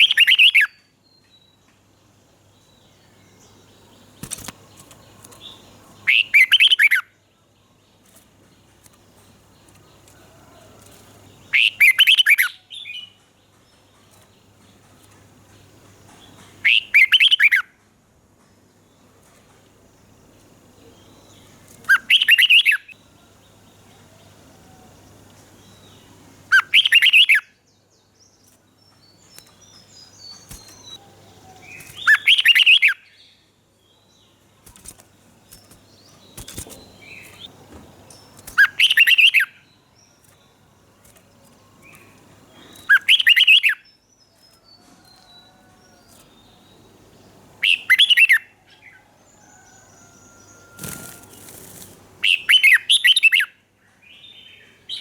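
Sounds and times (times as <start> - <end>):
bird song phrases: 0.0 - 17.8, 18.4 - 55.0.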